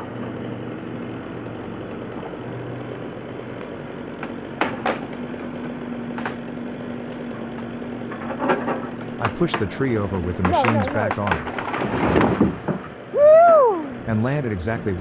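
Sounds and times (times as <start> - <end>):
diesel engine running: 0.0 - 15.0
tree trunk cracking: 1.3 - 13.2.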